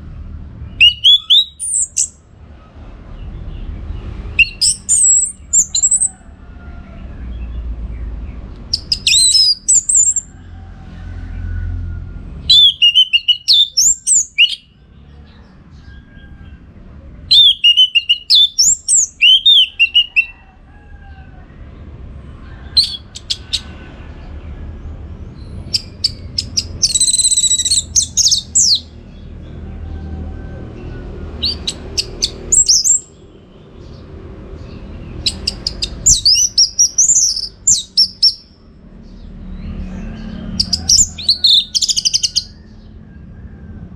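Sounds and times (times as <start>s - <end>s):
thrush singing: 0.8s - 2.2s, 4.4s - 6.1s, 12.5s - 14.7s, 17.3s - 20.3s, 22.8s - 23.8s.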